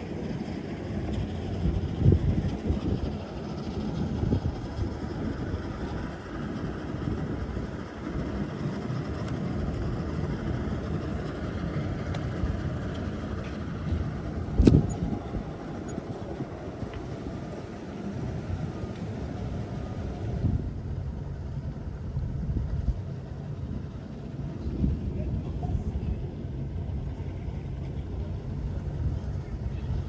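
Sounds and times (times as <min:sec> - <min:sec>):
wind buffeting microphone: 0:00.0 - 0:30.0.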